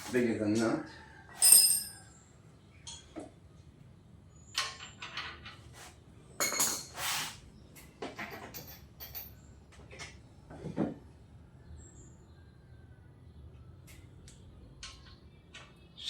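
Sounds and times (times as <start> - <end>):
metal hand tools clinking: 1.4 - 2.0.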